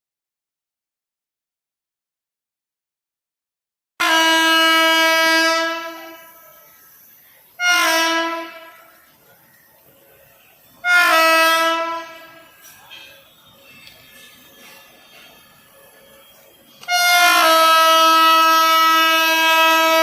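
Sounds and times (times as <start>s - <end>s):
locomotive horn blasts: 4.0s - 6.7s, 7.6s - 9.0s, 10.8s - 12.7s, 13.6s - 20.0s.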